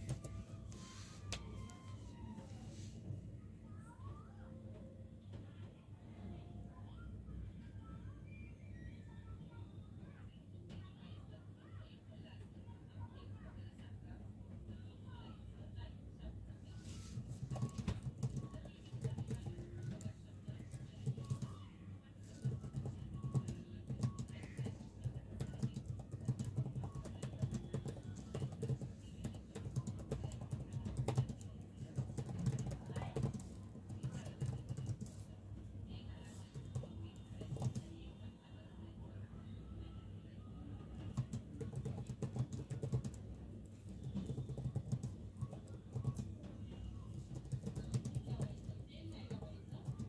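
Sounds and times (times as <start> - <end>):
computer keyboard typing: 0.0 - 0.4, 17.2 - 35.2, 36.5 - 37.9, 41.0 - 43.3, 43.9 - 46.5, 47.1 - 50.0.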